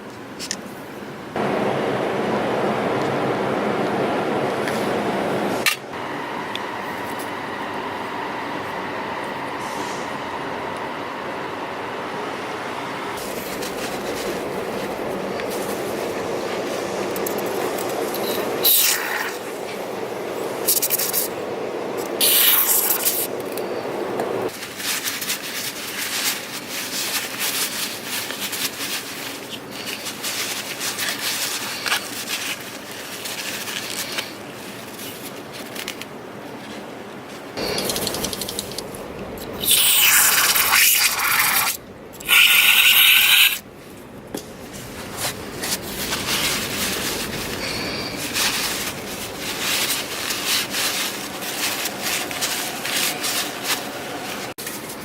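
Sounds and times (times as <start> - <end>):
hand rubbing and scraping: 13.2 - 19.8, 24.2 - 55.0
aerosol spray hissing: 39.5 - 43.6.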